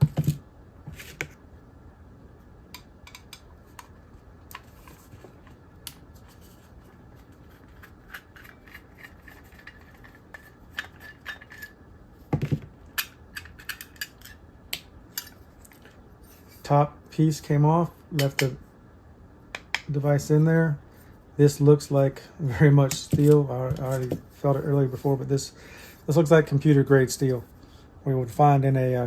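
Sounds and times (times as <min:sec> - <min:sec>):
small parts clicking and scraping: 0:04.5 - 0:11.8, 0:12.8 - 0:16.6.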